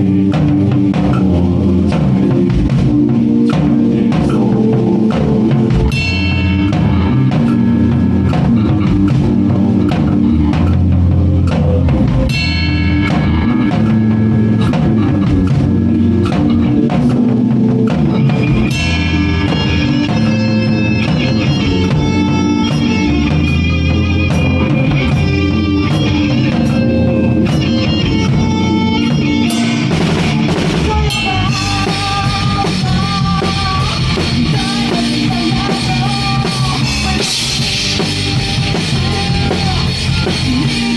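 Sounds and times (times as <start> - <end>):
drum kit: 0.0 - 40.9
rock band playing: 0.0 - 40.9.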